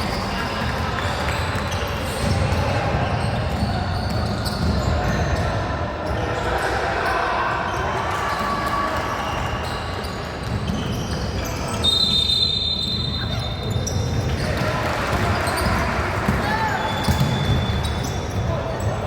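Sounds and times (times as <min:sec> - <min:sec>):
voices echoing in hall: 0:00.0 - 0:19.0
basketball bouncing: 0:14.2 - 0:18.4.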